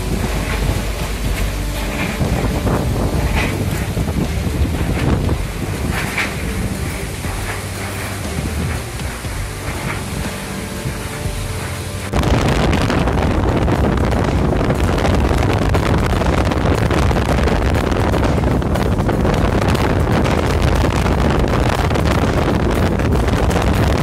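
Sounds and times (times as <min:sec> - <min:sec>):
heavy rain hiss: 0:00.0 - 0:24.0
wind buffeting microphone: 0:00.0 - 0:24.0.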